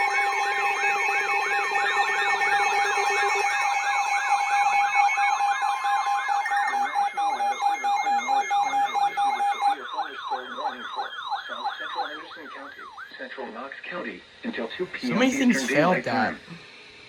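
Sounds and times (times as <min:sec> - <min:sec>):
electronic siren yelp: 0:00.0 - 0:13.3, 0:15.0 - 0:16.0
steady alert tone: 0:15.0 - 0:16.3.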